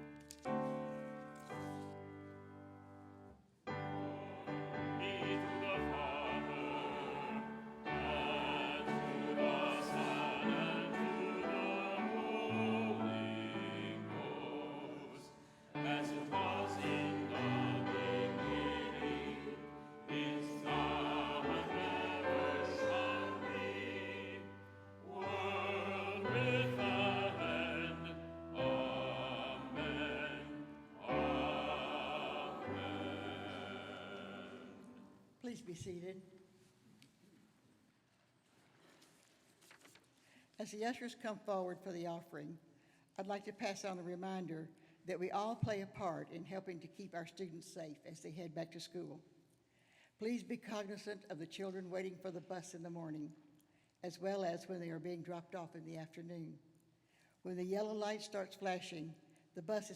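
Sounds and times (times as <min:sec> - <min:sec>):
keyboard accompaniment: 0:00.0 - 0:15.0, 0:15.8 - 0:34.8
choir singing a hymn: 0:03.7 - 0:35.2.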